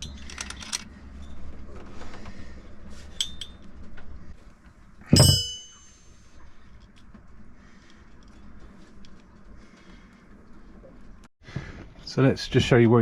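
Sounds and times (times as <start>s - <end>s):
loud metallic clang: 5.1s - 6.0s.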